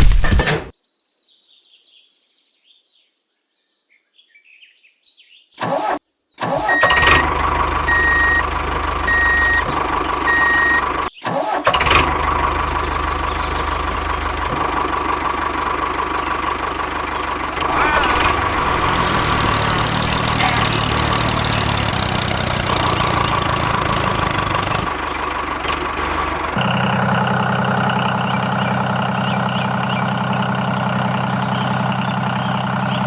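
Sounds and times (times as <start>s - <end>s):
small engine droning: 5.6s - 33.0s.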